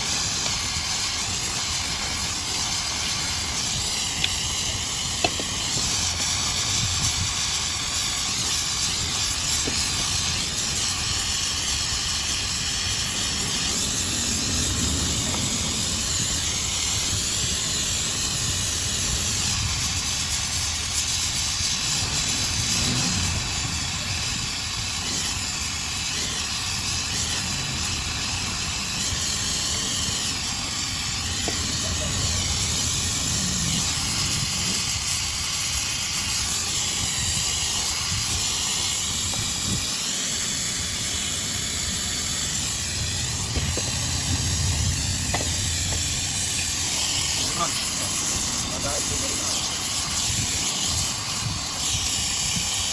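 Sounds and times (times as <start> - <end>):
steady hiss: 0.0 - 52.9
low rumble: 13.0 - 18.2, 21.9 - 25.0, 42.2 - 48.8.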